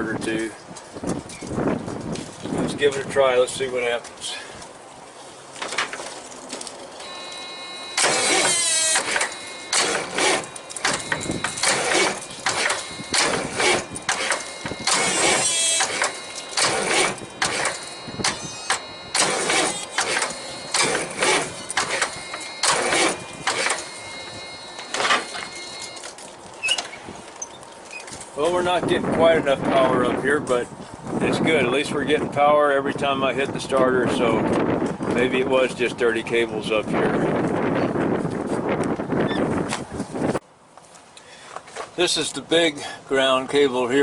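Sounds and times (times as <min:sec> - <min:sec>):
steady high tone: 0:07.0 - 0:26.1
truck starter cranking: 0:07.0 - 0:26.1.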